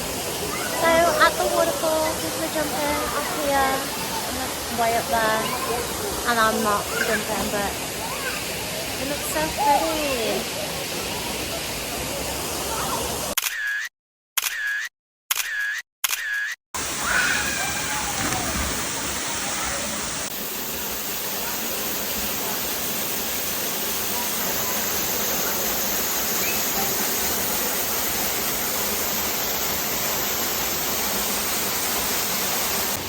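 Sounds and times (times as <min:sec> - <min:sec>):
waterfall rushing: 0:00.0 - 0:13.4, 0:16.8 - 0:33.0
short clipped sounds: 0:13.4 - 0:16.6.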